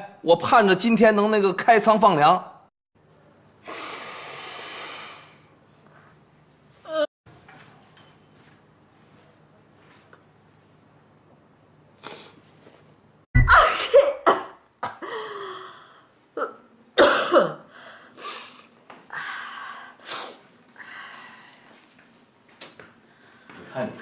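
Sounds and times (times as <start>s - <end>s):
noisy breathing: 3.6s - 5.6s.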